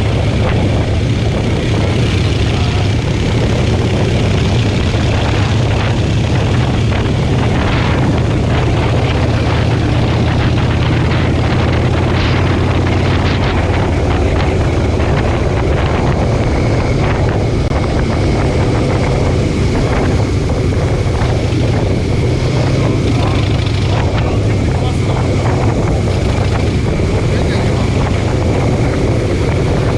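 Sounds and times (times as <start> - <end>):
motorcycle engine running: 0.0 - 29.9
wind rushing over microphone: 0.0 - 29.9.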